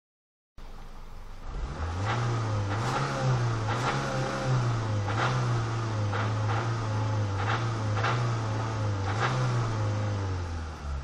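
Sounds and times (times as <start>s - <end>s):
car engine humming: 0.6s - 11.0s.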